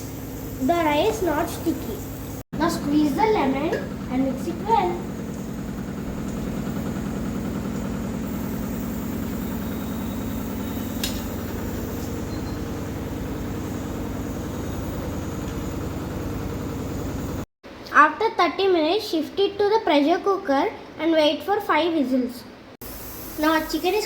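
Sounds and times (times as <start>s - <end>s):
low motor hum: 0.0s - 17.5s
sharp click: 11.0s - 11.3s.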